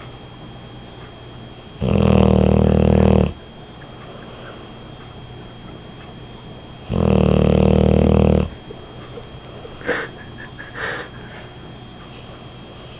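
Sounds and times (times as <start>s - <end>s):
dog snoring: 1.6s - 3.4s, 6.8s - 8.6s.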